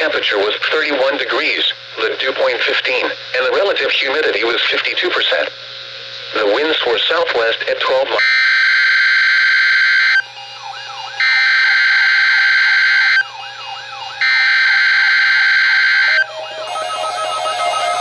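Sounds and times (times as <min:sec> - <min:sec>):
harsh buzzing data bursts: 0:07.1 - 0:18.0
stepped electronic melody: 0:16.1 - 0:18.0.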